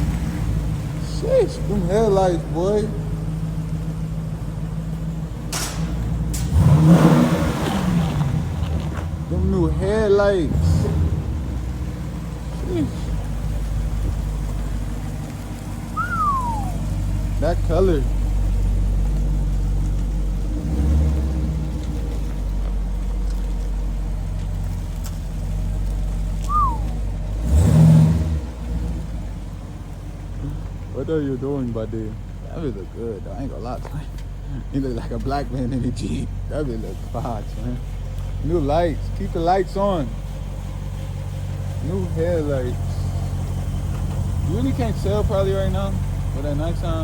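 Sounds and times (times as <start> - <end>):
car engine idling and revving: 0.0 - 47.0
short high squeak: 16.0 - 16.8, 26.4 - 27.1.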